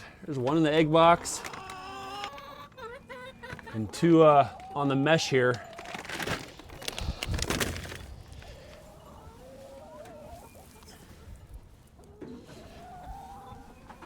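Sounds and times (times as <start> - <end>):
hens clucking: 0.0 - 14.0
rustling handling noise: 5.5 - 8.9.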